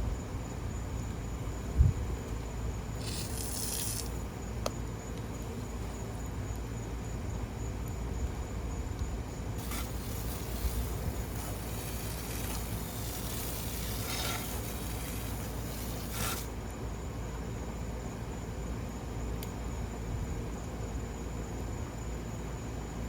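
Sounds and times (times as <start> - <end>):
crickets singing: 0.0 - 23.0
fire hissing: 3.0 - 4.3, 9.6 - 16.6
burning wood popping: 9.6 - 16.5.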